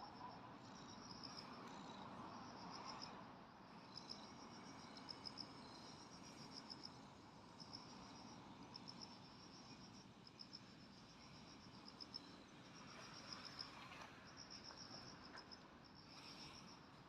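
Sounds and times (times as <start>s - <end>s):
crickets chirping: 0.0s - 17.0s.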